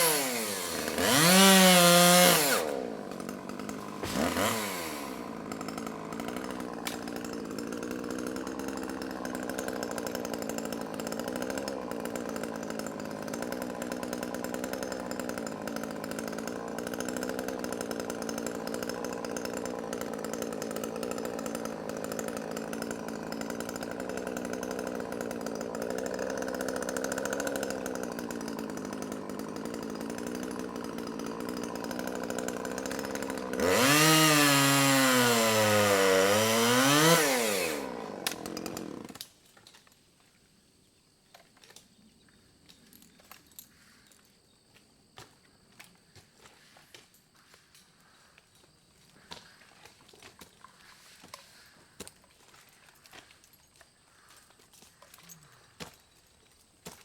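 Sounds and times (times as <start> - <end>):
chainsaw revving: 0.0 - 39.3.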